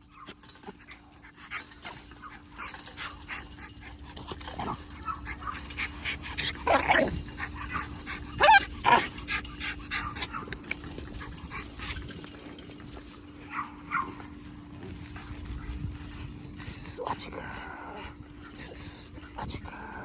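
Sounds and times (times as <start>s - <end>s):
clicks and scuffling: 0.0s - 16.5s
puppy barking and yipping: 4.6s - 9.1s, 13.4s - 14.3s.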